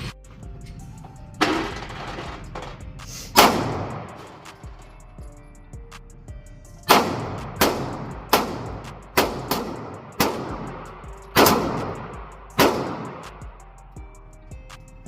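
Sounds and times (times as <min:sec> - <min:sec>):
gunshots echoing: 0:03.3 - 0:04.8, 0:06.9 - 0:13.5.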